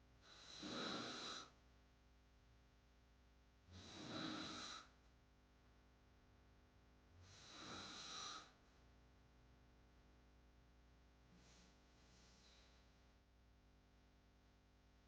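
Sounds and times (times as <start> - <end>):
woman snoring: 0.2 - 1.6, 3.7 - 5.0, 7.2 - 8.6.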